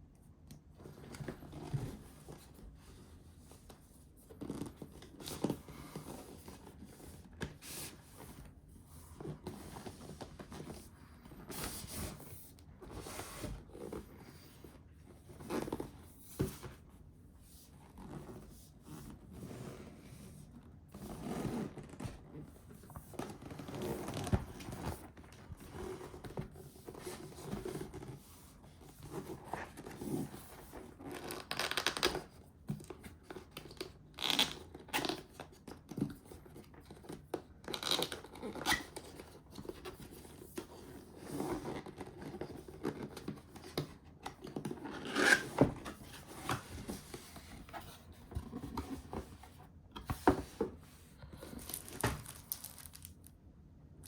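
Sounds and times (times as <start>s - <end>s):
packaging scraping and crinkling: 44.5s - 49.2s, 51.3s - 53.3s.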